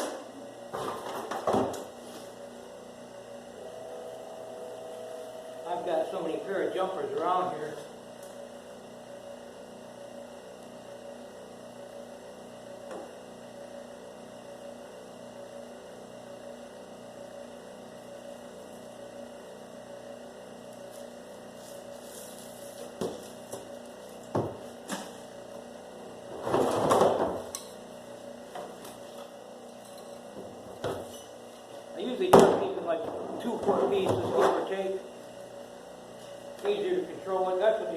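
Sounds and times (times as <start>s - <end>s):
machine motor humming: 1.8s - 16.9s.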